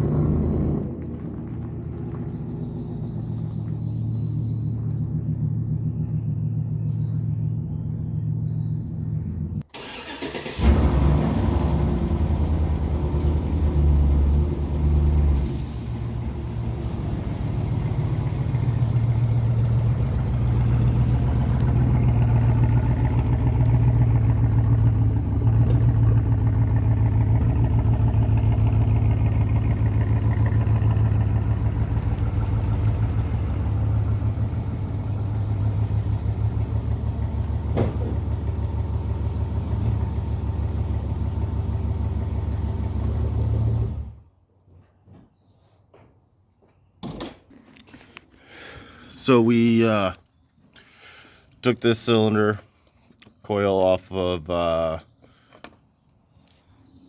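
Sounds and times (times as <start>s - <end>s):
truck engine idling unevenly: 0.0s - 44.2s.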